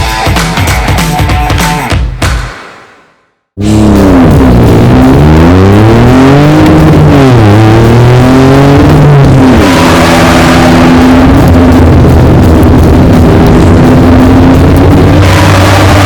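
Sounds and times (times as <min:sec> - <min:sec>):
car engine revving: 0:03.6 - 0:16.0.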